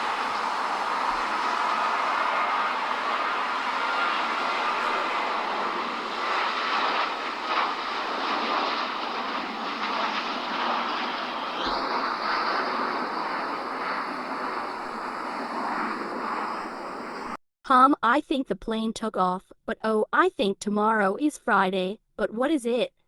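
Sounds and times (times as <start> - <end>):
jet engines at takeoff: 0.0 - 17.4
turbine whine: 0.0 - 17.4.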